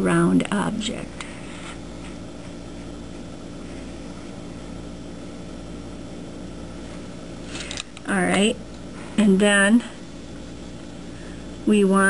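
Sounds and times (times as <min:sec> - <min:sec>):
electrical hum: 0:00.0 - 0:12.0.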